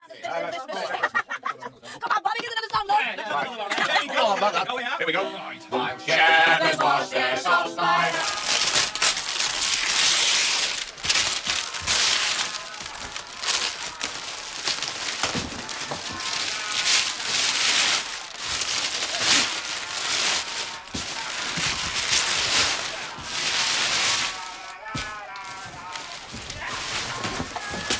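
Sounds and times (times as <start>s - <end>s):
paper crumpling and tearing: 7.9s - 27.9s.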